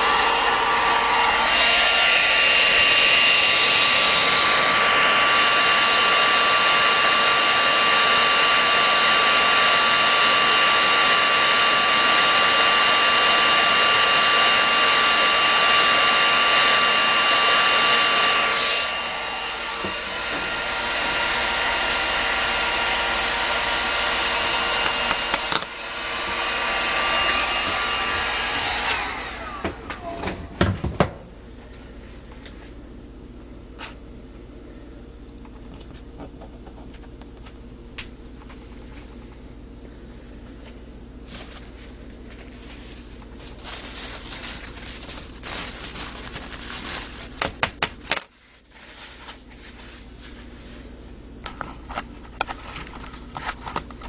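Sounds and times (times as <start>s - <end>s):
hot air gun blowing: 0.0s - 30.1s.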